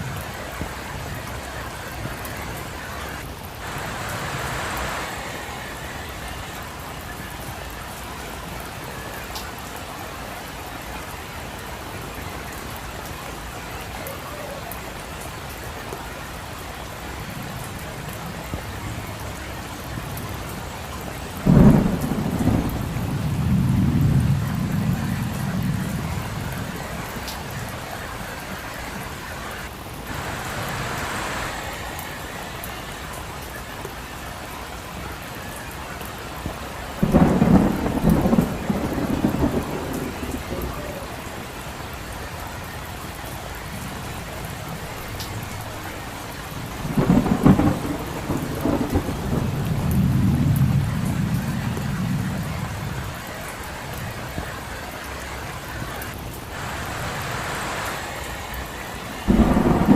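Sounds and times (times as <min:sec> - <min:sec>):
steady rain on a road: 0:00.0 - 0:59.9
thunder cracking and rumbling: 0:17.0 - 0:29.3, 0:36.4 - 0:42.0, 0:43.6 - 0:54.5, 0:58.6 - 0:59.9.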